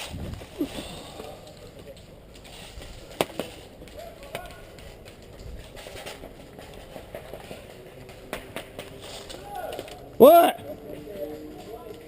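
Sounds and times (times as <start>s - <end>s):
faint distant voices: 0.5s - 8.0s.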